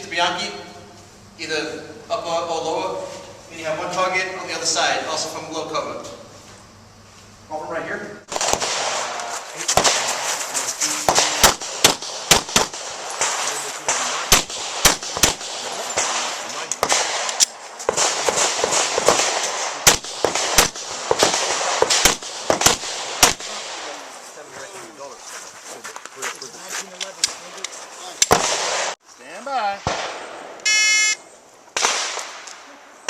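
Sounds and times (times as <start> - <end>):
steady noisy background: 0.0 - 25.8
handgun shots: 8.3 - 10.4, 11.0 - 23.9, 28.2 - 29.0, 31.8 - 32.6.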